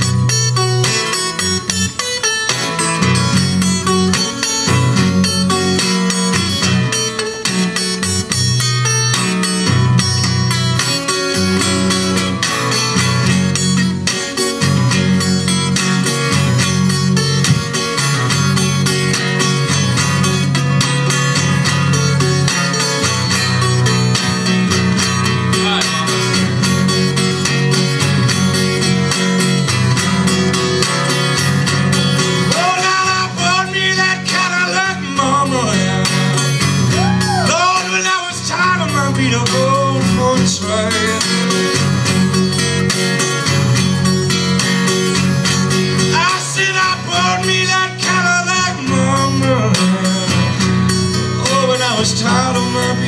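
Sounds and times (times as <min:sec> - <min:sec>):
acoustic guitar blues: 0:00.0 - 0:53.0.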